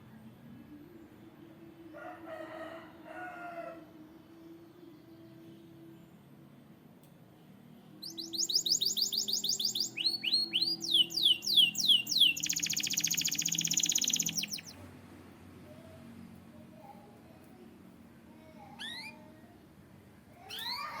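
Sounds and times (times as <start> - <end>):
canary singing: 8.0 - 14.8, 18.4 - 19.4, 20.4 - 21.0.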